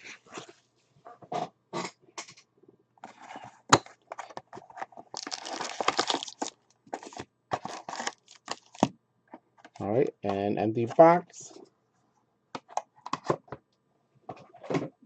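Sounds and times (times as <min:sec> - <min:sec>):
cardboard being handled: 0:04.1 - 0:08.9
plastic wrapping crinkling and tearing: 0:05.0 - 0:08.9.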